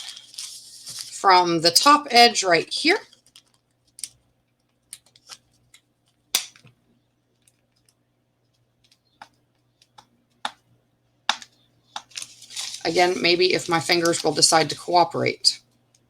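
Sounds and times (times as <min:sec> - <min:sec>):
fingers handling paper: 0:12.0 - 0:14.5.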